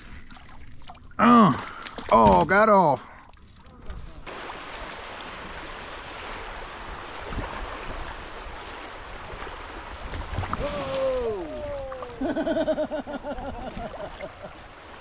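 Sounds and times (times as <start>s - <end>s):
creek water running: 0.0s - 15.0s
man's drawn-out exclamation: 10.6s - 12.2s.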